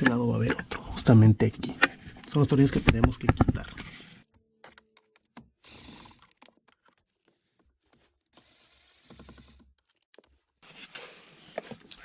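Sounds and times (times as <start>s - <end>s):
screwdriver clicking and scraping: 0.0s - 4.2s.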